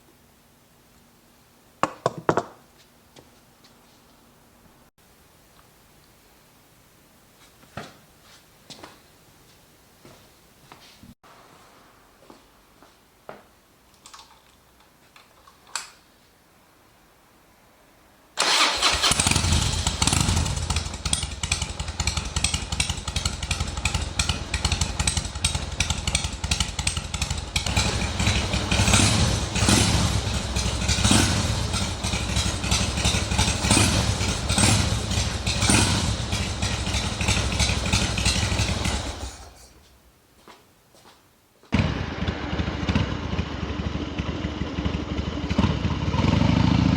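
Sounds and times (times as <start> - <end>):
motorcycle engine running loud: 19.1 - 39.6, 41.8 - 46.9.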